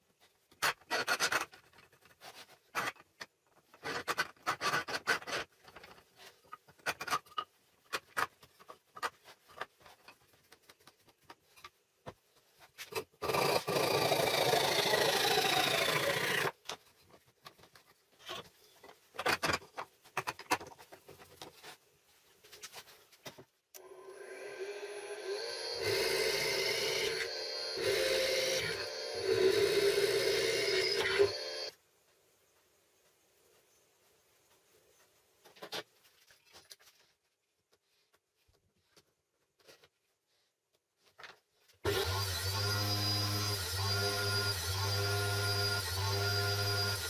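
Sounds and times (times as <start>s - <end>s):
wooden parts and tools handled: 0.1s - 13.2s, 15.8s - 23.6s, 34.9s - 41.8s.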